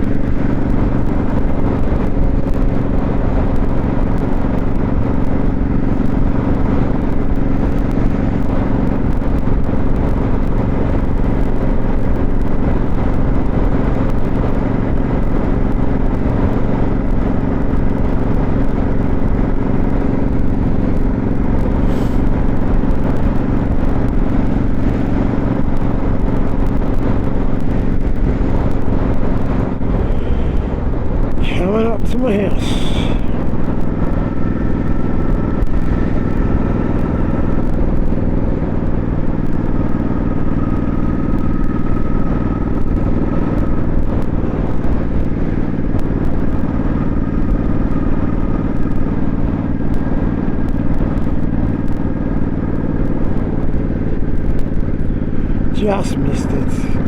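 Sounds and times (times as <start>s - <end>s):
motorcycle engine cruising: 0.0s - 31.8s
wind noise: 0.0s - 55.8s
road noise: 0.0s - 57.0s.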